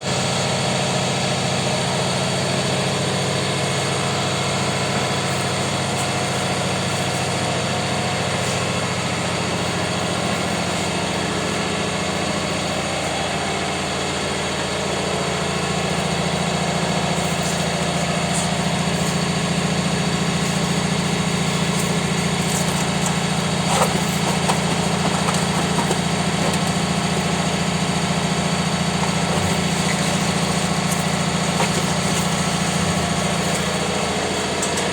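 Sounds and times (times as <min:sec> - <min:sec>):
baling press machine hum: 0:00.0 - 0:34.9.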